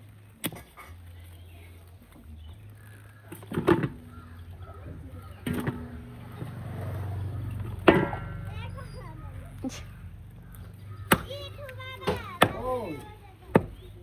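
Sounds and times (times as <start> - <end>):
sharp knocks: 7.7 - 8.5.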